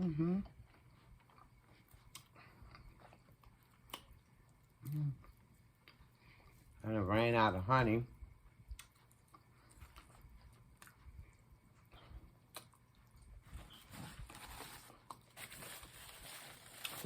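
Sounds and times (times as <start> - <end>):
faint mouth chewing: 0.4 - 6.7, 8.7 - 13.4.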